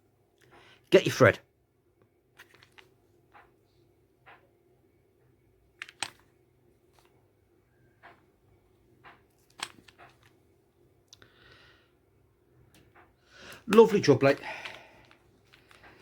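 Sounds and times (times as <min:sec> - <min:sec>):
faint clicks and scrapes: 0:02.4 - 0:03.6, 0:09.0 - 0:10.4, 0:14.3 - 0:16.0.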